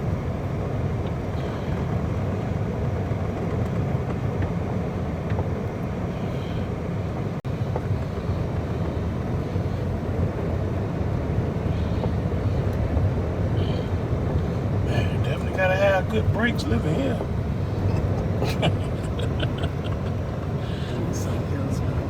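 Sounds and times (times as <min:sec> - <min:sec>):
road noise: 0:00.0 - 0:22.0
vehicle engine rumble: 0:00.0 - 0:22.0.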